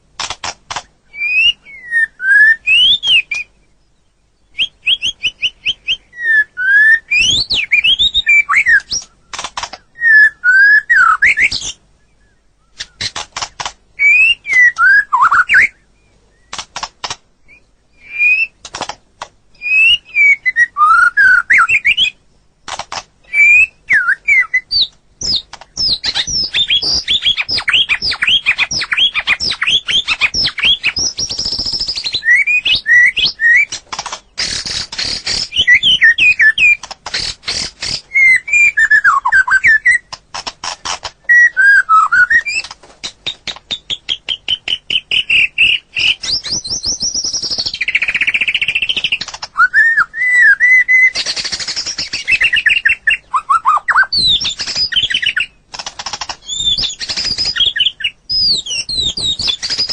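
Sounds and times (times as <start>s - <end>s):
rapid rattling clicks of bird: 0.1s - 1.0s, 8.6s - 9.9s, 12.8s - 14.9s, 16.5s - 17.3s, 18.6s - 19.4s, 21.6s - 23.4s, 24.7s - 49.6s, 50.9s - 53.2s, 54.1s - 59.9s
bird singing whistled phrases: 1.1s - 3.8s, 4.4s - 13.1s, 14.0s - 16.6s, 17.5s - 18.6s, 19.6s - 22.2s, 23.2s - 33.8s, 34.4s - 40.1s, 41.2s - 42.7s, 43.6s - 55.6s, 56.4s - 59.9s.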